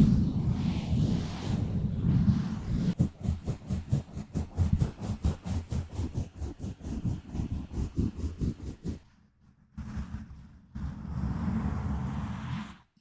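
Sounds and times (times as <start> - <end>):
scratching on microphone: 0.0 - 9.0.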